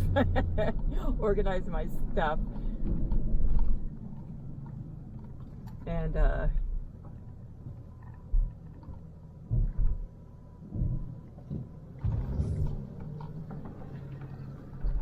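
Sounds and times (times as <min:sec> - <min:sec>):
road and engine rumble: 0:00.0 - 0:15.0
low thumps: 0:07.6 - 0:14.0.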